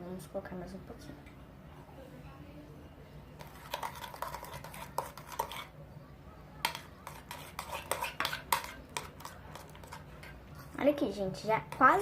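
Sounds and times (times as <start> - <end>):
spoon scraping slime in bowl: 3.4 - 5.8, 6.6 - 10.8.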